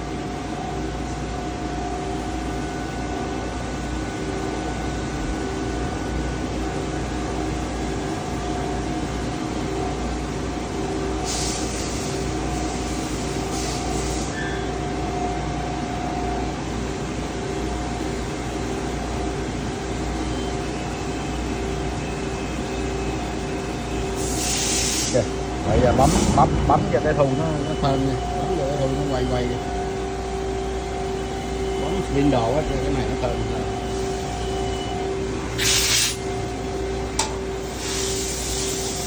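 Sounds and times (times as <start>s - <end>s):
lathe machine humming: 25.1s - 35.5s.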